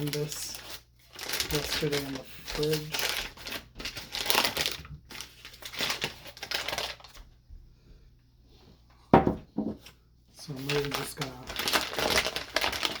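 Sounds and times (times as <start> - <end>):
packaging crinkling: 0.0 - 7.2, 10.5 - 13.0.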